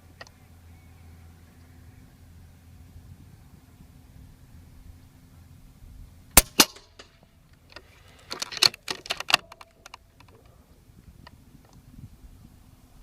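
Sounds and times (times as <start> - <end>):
air rifle shot cracks: 6.4 - 7.2.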